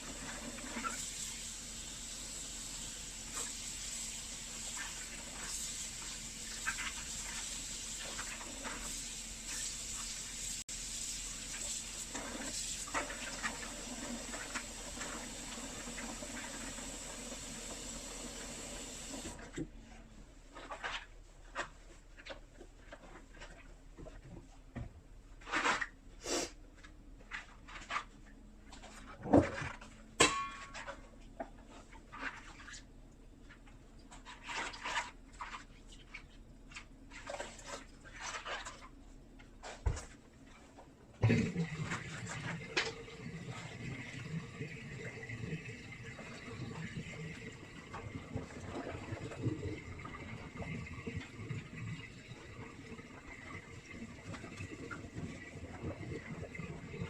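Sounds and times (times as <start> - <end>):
tap water running: 0.0 - 19.5, 41.2 - 57.0.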